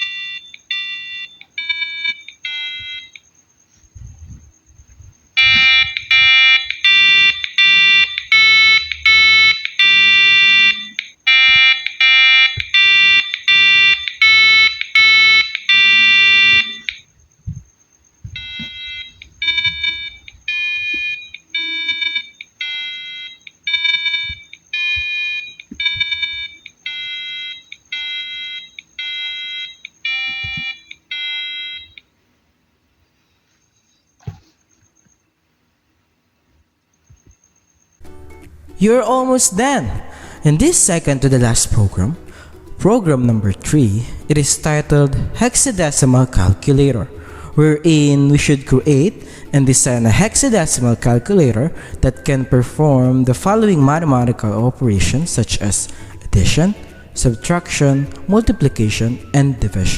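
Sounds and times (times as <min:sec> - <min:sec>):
piezo buzzer beeping tune: 0:00.0 - 0:03.3, 0:05.4 - 0:17.1, 0:18.3 - 0:32.0.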